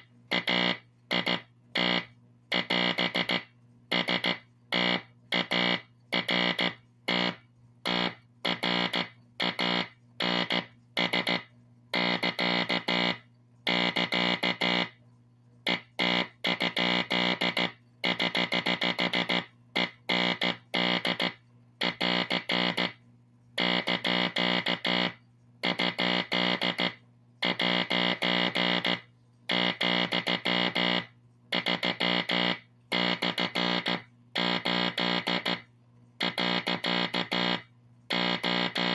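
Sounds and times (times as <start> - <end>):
steady low hum: 0.0 - 38.9
morse code beeps: 31.6 - 35.5.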